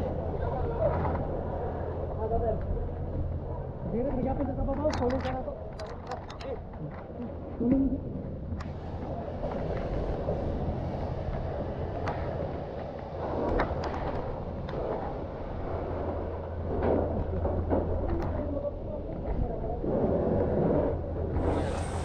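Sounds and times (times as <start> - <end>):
engine running steadily: 7.7 - 22.0.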